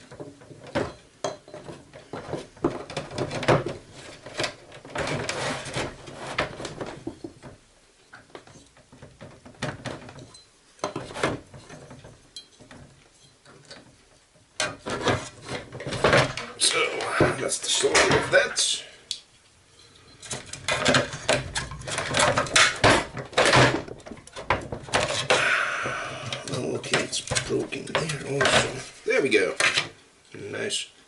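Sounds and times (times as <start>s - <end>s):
hand tools clicking and knocking: 0.0s - 18.5s, 20.0s - 29.0s
tool scraping plastic: 1.6s - 7.5s, 14.6s - 18.4s, 20.2s - 30.0s.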